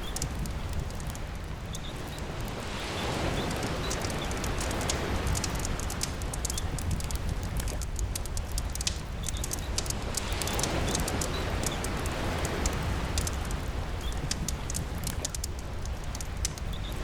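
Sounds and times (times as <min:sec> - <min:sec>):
campfire crackling and popping: 0:00.0 - 0:17.0
sea rumbling: 0:00.0 - 0:17.0
steady rain: 0:00.0 - 0:17.0
wave washing in: 0:08.8 - 0:15.9.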